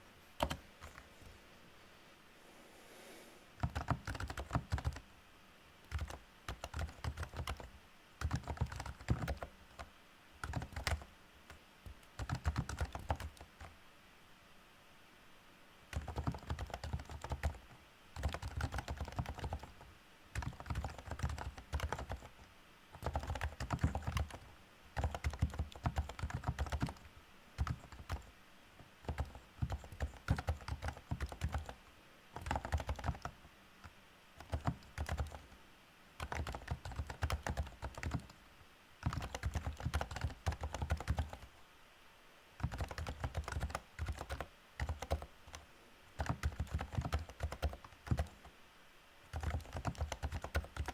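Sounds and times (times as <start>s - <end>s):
keyboard typing: 0.4s - 1.1s, 3.6s - 5.0s, 5.8s - 13.8s, 15.9s - 31.8s, 32.4s - 35.5s, 36.2s - 38.4s, 39.0s - 41.5s, 42.6s - 45.6s, 46.2s - 48.5s, 49.3s - 50.9s.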